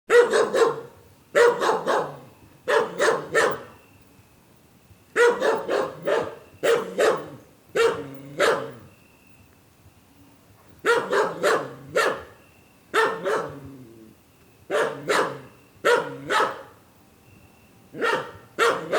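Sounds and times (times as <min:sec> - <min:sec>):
dog barking: 0:00.1 - 0:03.7, 0:05.2 - 0:08.8, 0:10.8 - 0:12.3, 0:13.0 - 0:13.6, 0:14.7 - 0:16.8, 0:18.0 - 0:18.9.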